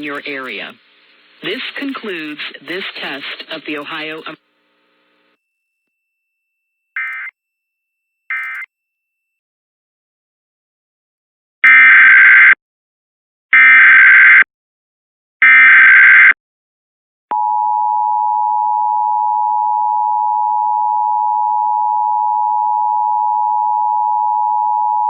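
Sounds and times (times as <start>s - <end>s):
digital data bursts: 7.0s - 7.3s, 8.3s - 8.7s
two-tone attention signal: 7.0s - 7.3s, 8.3s - 8.7s.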